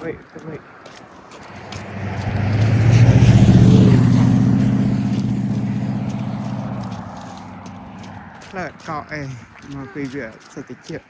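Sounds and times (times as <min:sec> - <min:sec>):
vehicle driving past: 0:01.1 - 0:09.6.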